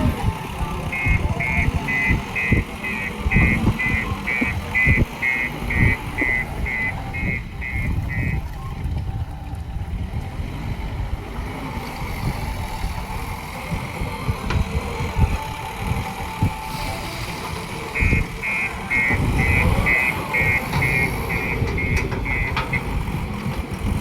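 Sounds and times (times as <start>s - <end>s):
backhoe loader engine running: 0.0s - 24.0s
reversing alarm beeps: 0.6s - 8.4s, 16.4s - 23.1s.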